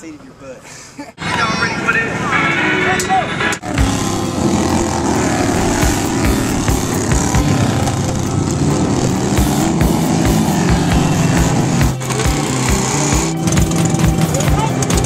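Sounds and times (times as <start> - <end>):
lawn mower engines running: 3.6 - 15.0.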